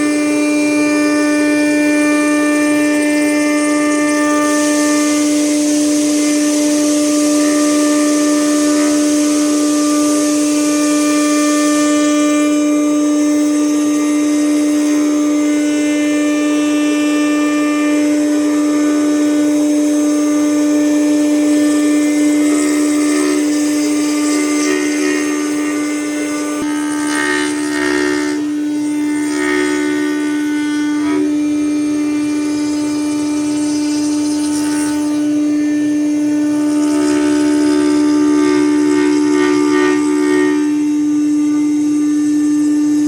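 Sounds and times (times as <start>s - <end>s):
router spindle high whine: 0.0s - 43.0s
bit cutting wood hiss: 18.4s - 40.8s.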